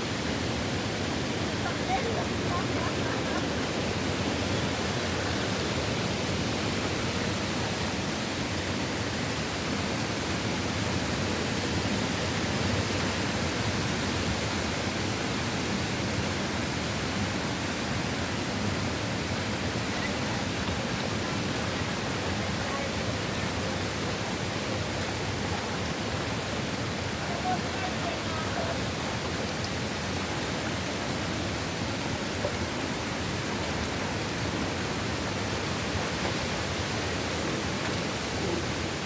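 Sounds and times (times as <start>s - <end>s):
light rain: 0.0s - 39.0s.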